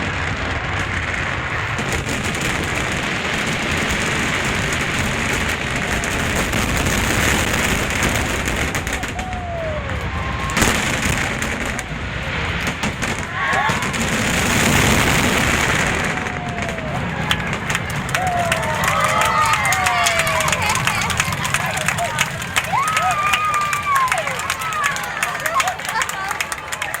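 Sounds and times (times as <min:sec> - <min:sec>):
low rumble of booms: 0:00.0 - 0:18.6
sharp firework bang: 0:00.0 - 0:19.0
fireworks crackling: 0:00.0 - 0:27.0.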